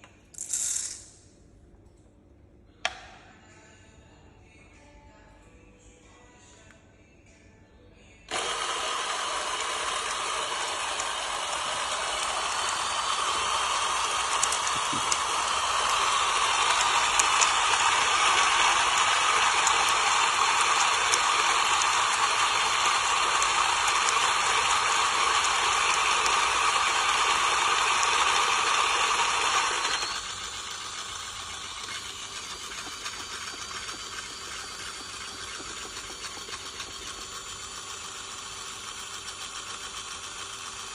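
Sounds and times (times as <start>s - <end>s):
espresso machine rattling and hissing: 8.3s - 40.9s.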